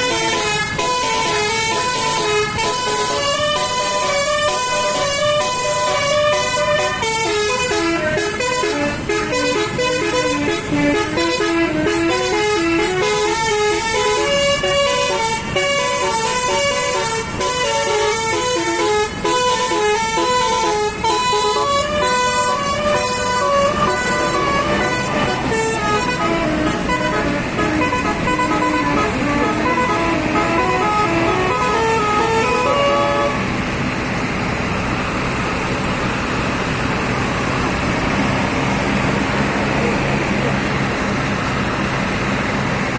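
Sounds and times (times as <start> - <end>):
multi-tone air horn playing a tune: 0.0 - 33.5
steady engine noise: 0.0 - 42.9.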